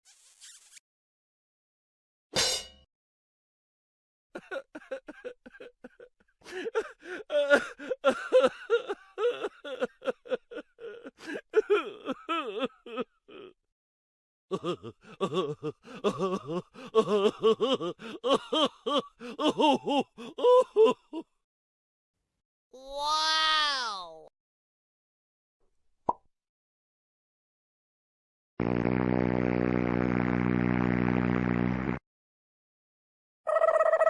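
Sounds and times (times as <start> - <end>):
high-pitched laughter: 33.5 - 34.0.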